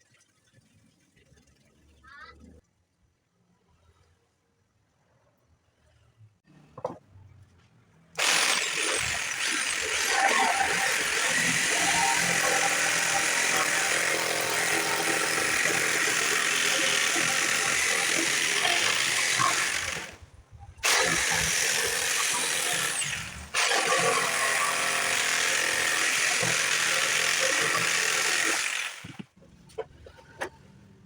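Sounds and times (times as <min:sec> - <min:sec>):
power tool running: 0:08.2 - 0:20.2, 0:20.8 - 0:29.3.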